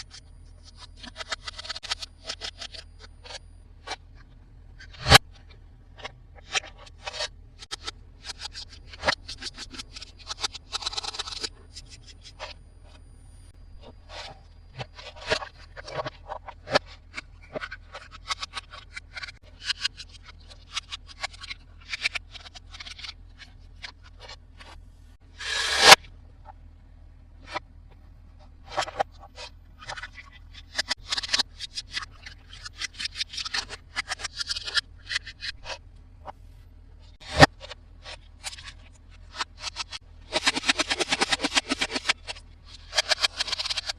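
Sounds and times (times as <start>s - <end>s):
plastic toy parts clicking: 39.3s - 43.9s.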